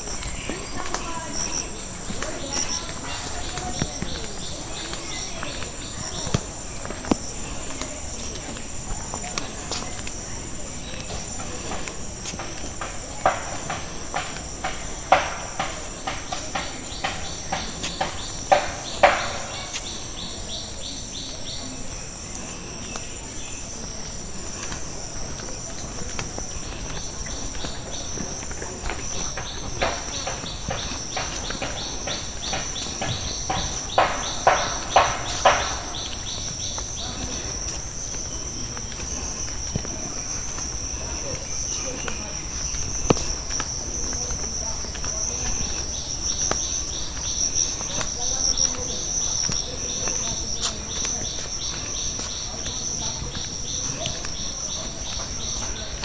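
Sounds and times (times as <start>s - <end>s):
insects chirring: 0.0s - 56.0s
sharp knocks: 12.8s - 19.8s, 28.8s - 36.6s.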